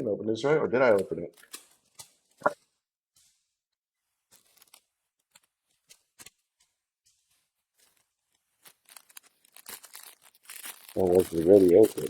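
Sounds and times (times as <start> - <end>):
faint clicks and rustles: 4.2 - 12.0.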